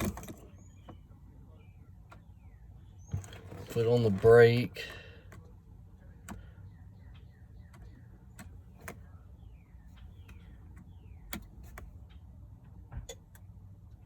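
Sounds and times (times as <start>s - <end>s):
low steady hum: 0.0s - 14.0s
sharp clicks: 9.9s - 12.3s.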